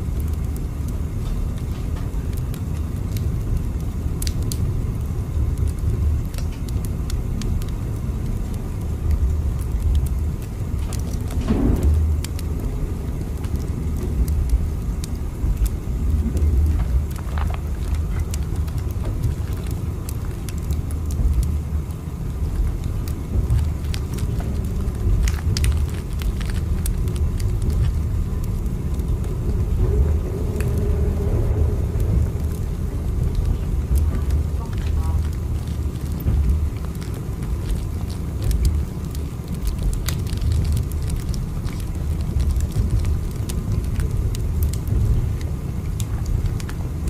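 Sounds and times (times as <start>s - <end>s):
moving train rumble: 7.9s - 47.0s
light clicks and creaks: 22.4s - 46.8s.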